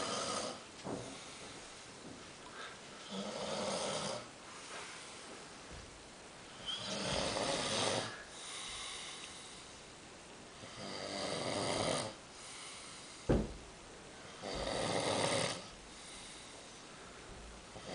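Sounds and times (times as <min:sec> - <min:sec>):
man snoring heavily: 0:00.0 - 0:00.6, 0:03.0 - 0:04.3, 0:06.6 - 0:09.1, 0:10.6 - 0:12.2, 0:14.4 - 0:16.3.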